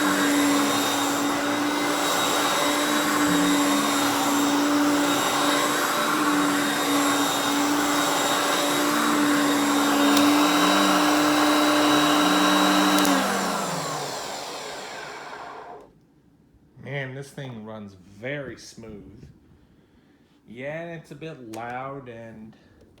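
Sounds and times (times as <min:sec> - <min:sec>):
motor winding down: 0:00.0 - 0:15.9
upright vacuum running: 0:00.0 - 0:15.9.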